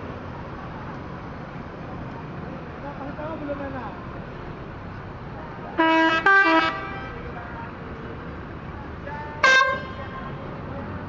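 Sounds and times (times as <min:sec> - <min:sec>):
bus horn playing a tune: 0:05.8 - 0:07.3, 0:09.4 - 0:10.1.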